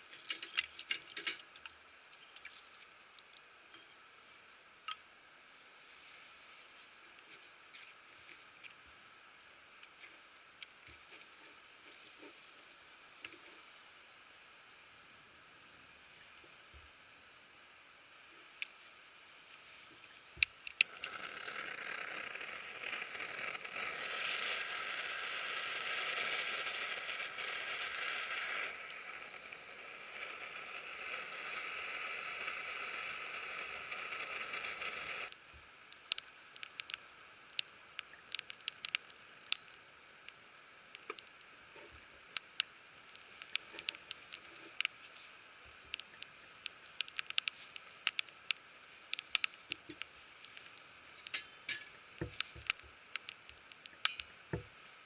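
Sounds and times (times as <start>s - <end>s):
wood fire crackling: 0.0s - 3.8s, 19.4s - 55.0s
steady hiss: 0.0s - 55.0s.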